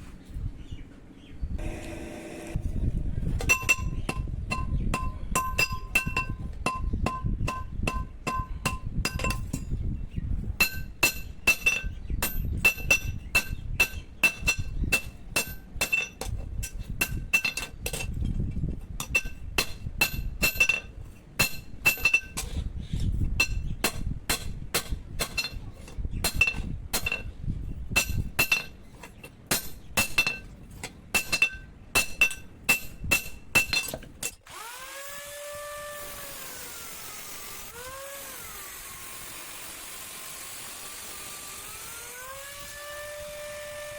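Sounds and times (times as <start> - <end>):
hammer striking steel on anvil: 3.4 - 9.7, 10.6 - 18.1, 19.0 - 22.5, 28.0 - 28.8, 29.5 - 30.5, 31.1 - 34.4.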